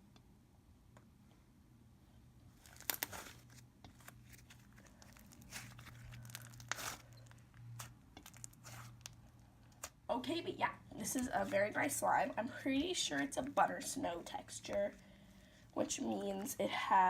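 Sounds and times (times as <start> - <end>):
slime squishing and crackling: 2.5 - 10.0.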